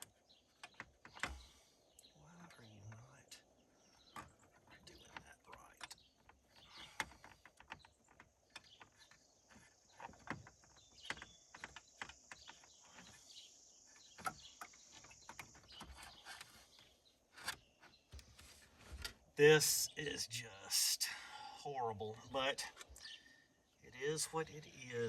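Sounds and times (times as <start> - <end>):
small parts clicking and tapping: 4.0 - 13.3
faint high hiss: 19.4 - 22.7.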